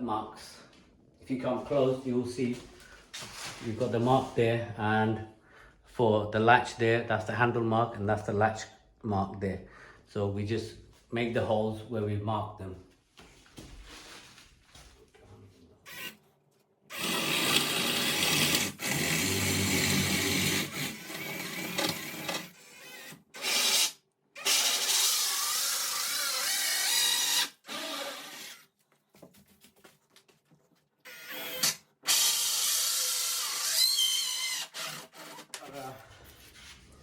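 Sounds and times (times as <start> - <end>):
power drill boring wood: 15.9 - 16.2, 16.9 - 28.6, 31.1 - 35.7.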